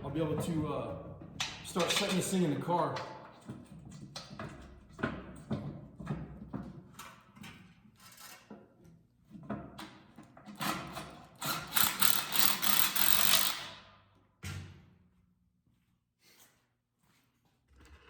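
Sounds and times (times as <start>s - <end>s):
metal tool clicks and clanks: 1.4s - 3.4s
ratchet wrench clicking: 11.4s - 13.8s.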